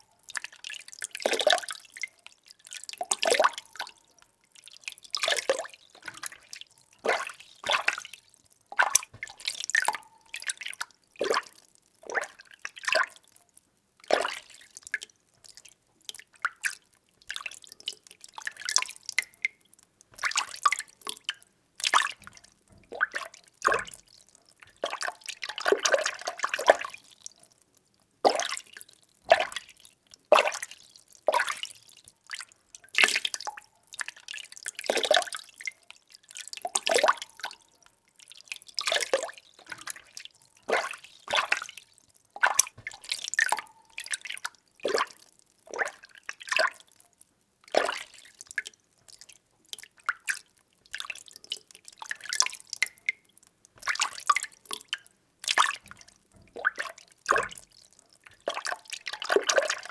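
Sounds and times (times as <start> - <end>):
water sloshing in container: 5.2 - 8.2, 8.8 - 13.2, 38.7 - 46.8.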